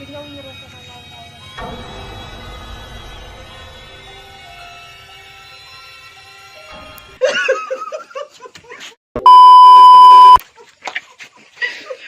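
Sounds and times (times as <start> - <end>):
people laughing: 7.2 - 9.0, 10.4 - 12.0
high censor beep: 9.2 - 10.4.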